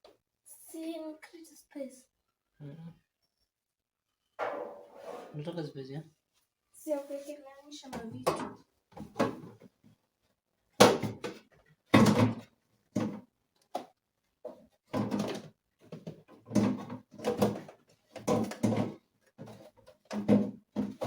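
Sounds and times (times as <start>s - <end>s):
fridge drawers and containers knocking: 12.0s - 12.4s, 14.9s - 21.0s.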